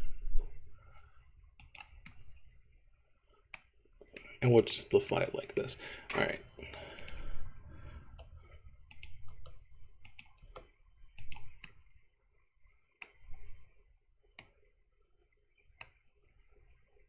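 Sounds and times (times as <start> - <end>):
mouse and keyboard clicks: 1.6 - 2.3, 7.0 - 7.3, 8.9 - 11.8.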